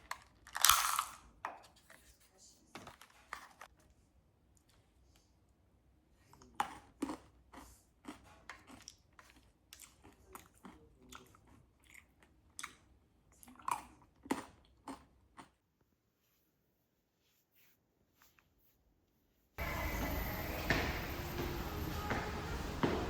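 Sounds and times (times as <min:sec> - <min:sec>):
person chewing food: 0:06.3 - 0:15.7.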